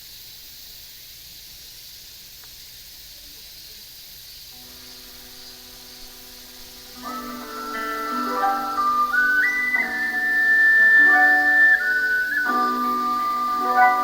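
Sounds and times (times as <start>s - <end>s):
steady outdoor hiss: 0.0s - 14.0s
loudspeaker hum of held tones: 4.6s - 14.0s.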